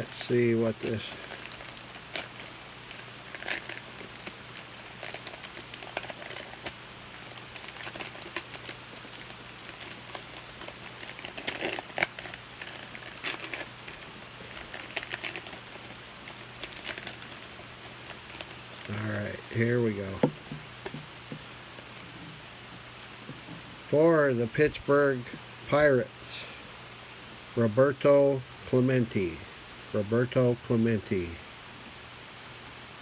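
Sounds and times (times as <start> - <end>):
card wrapper crinkling: 0.0 - 23.7
cards being handled: 0.0 - 23.8
faint low hum: 0.0 - 33.0.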